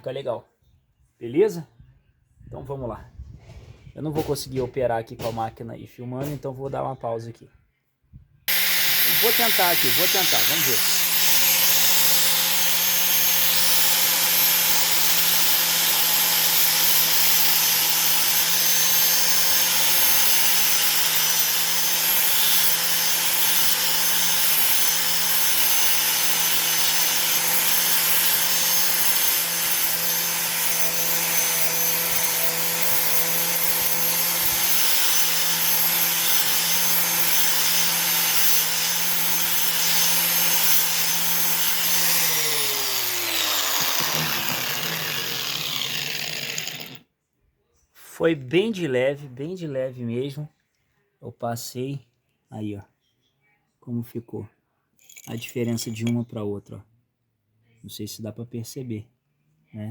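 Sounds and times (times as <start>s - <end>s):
angle grinder sanding: 8.5s - 47.0s.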